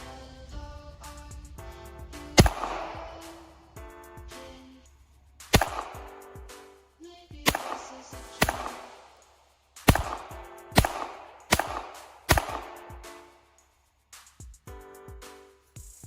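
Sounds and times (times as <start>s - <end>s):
background music: 0.0s - 16.0s
pistol shots with echo: 2.3s - 3.6s, 5.5s - 6.6s, 7.4s - 13.3s.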